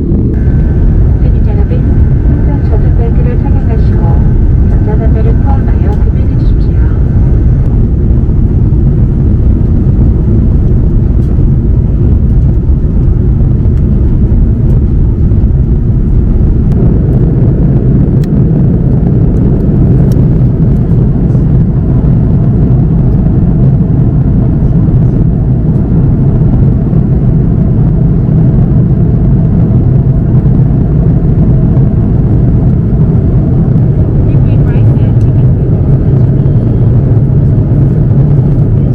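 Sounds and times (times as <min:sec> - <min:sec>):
airplane cabin roar: 0:00.0 - 0:38.9.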